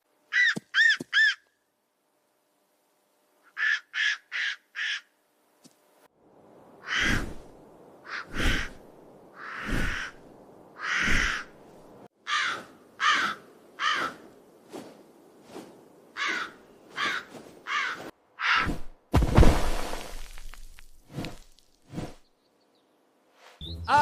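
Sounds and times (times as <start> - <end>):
crow cawing: 0.3 - 1.5, 3.5 - 5.1, 6.8 - 7.2, 8.0 - 8.8, 9.4 - 10.2, 10.8 - 11.6, 12.2 - 14.3, 16.2 - 18.7.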